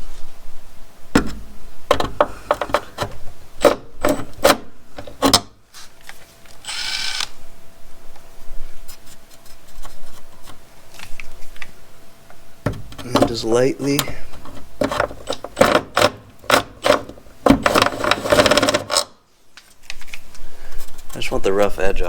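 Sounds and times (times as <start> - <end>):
hand tool scraping sheet metal: 1.9 - 5.4, 12.9 - 19.1.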